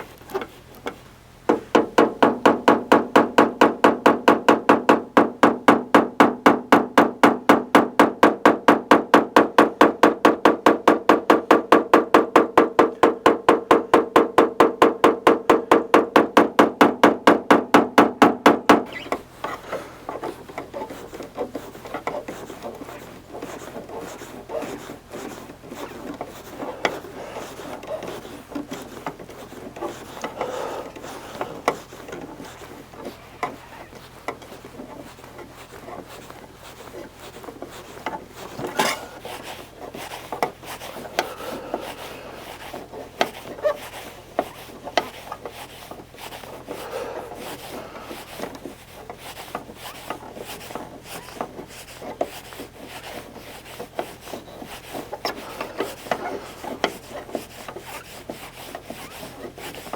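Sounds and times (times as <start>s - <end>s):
tool rubbing and scraping metal: 18.8s - 59.9s.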